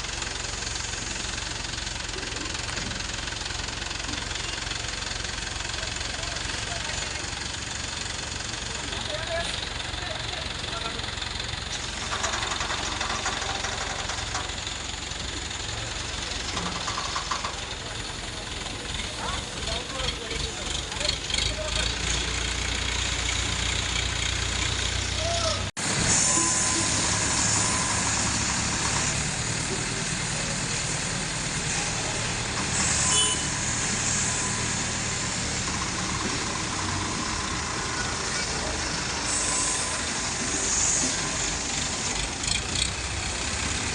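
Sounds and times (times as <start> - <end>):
crane engine chugging: 0.0 - 43.9
hiss: 25.9 - 28.4, 29.4 - 35.7, 39.1 - 42.7.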